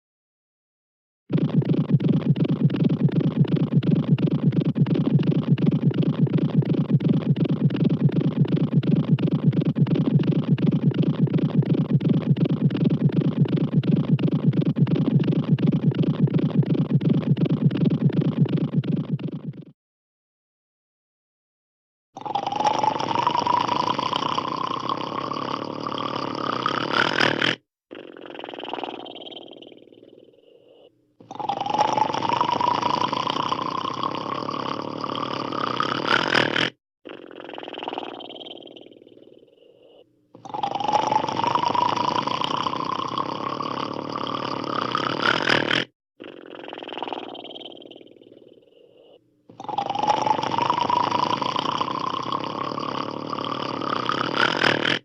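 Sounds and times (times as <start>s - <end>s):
growl: 22.2s - 55.0s.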